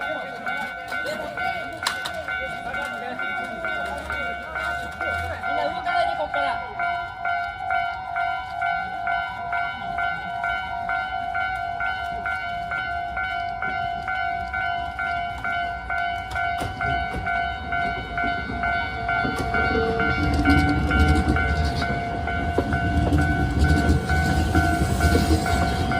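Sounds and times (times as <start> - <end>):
level crossing warning bell: 0.0 - 25.9
train rumbling: 0.0 - 25.9.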